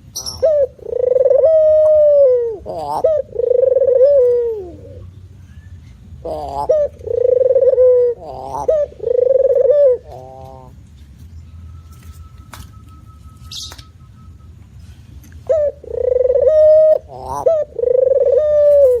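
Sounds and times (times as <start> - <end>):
dove cooing: 0.0 - 5.1, 6.2 - 10.8, 15.4 - 19.0.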